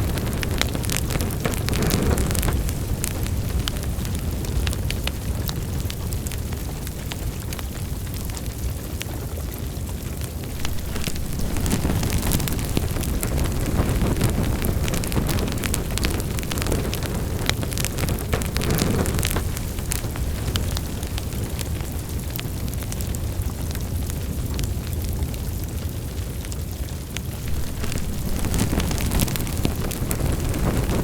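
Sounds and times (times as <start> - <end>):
low rumble of burning: 0.0 - 31.0
wood fire crackling and popping: 0.0 - 31.0.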